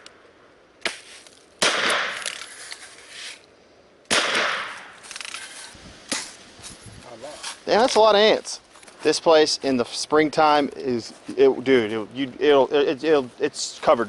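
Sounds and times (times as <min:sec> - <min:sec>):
gunshots: 0:01.6 - 0:02.3, 0:04.1 - 0:05.0.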